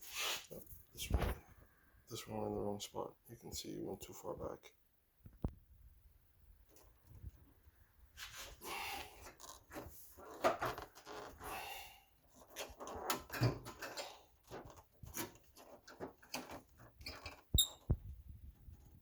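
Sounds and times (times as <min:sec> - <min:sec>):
plastic panel scraping and knocking: 0:12.4 - 0:19.0.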